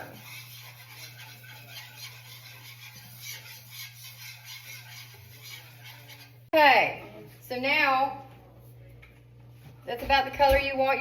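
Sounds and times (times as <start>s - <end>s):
utensil scraping a pan: 0.0s - 6.5s.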